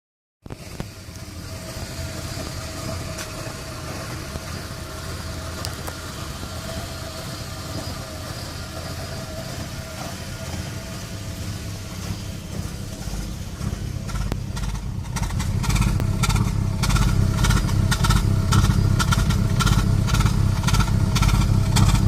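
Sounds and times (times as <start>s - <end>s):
car engine running: 0.5s - 22.0s.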